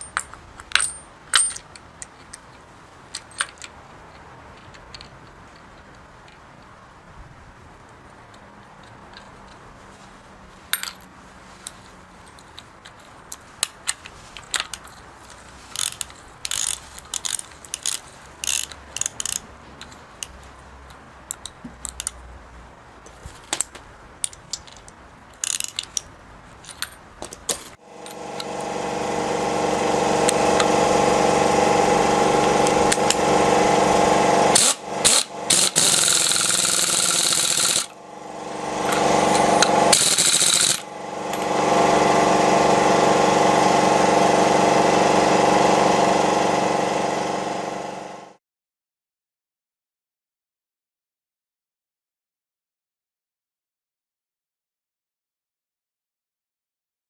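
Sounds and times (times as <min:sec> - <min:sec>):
metal tools clicking and tapping: 0:00.0 - 0:06.4
power tool whirring: 0:27.8 - 0:48.4.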